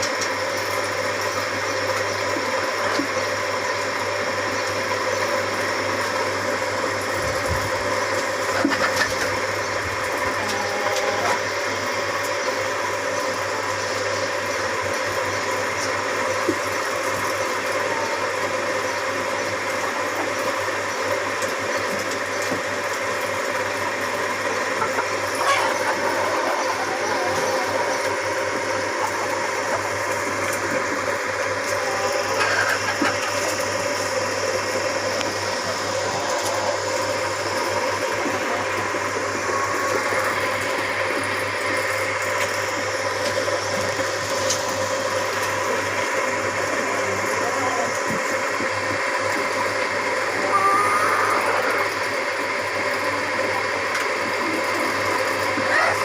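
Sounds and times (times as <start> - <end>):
steady mechanical hum: 0.0 - 56.0
faint calls: 24.5 - 41.0, 50.3 - 52.0.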